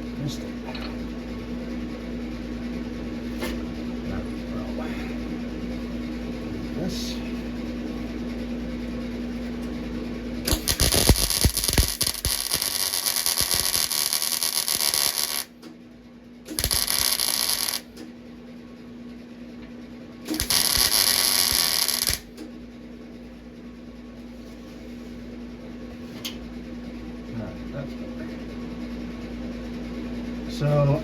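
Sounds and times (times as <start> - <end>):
welding arc crackling: 10.5 - 15.6, 16.5 - 18.0, 20.3 - 22.4.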